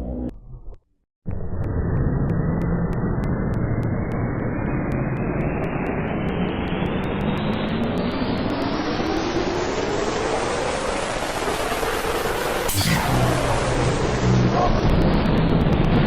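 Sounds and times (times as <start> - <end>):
regular clicking speeding up: 1.3 - 9.2, 13.6 - 16.0
loud rising rushing noise: 1.3 - 16.0.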